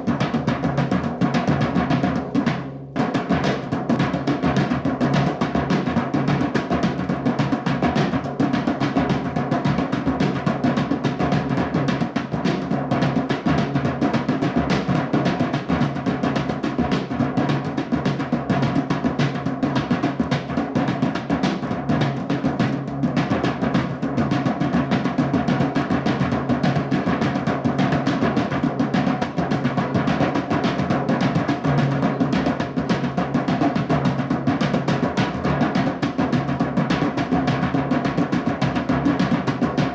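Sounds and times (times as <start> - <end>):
fast drumming with rolls: 0.0 - 39.9.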